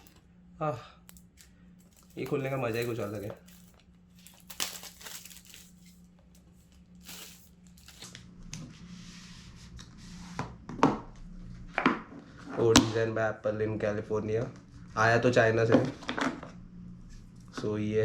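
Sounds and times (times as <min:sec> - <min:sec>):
packaging rustling: 0:01.0 - 0:08.2
cardboard tearing: 0:01.9 - 0:06.0, 0:06.6 - 0:08.2.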